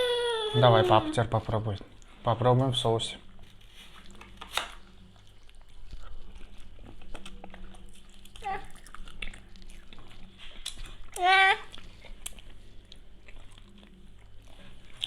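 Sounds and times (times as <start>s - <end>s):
person chewing wetly: 3.9s - 15.0s.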